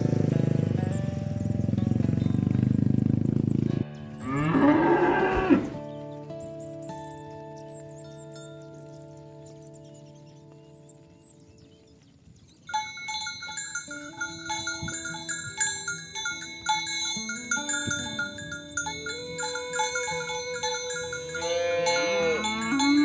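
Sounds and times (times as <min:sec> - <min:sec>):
cows mooing: 0:01.7 - 0:05.8, 0:19.2 - 0:23.0
cowbells clanking: 0:07.0 - 0:09.2, 0:12.6 - 0:23.0.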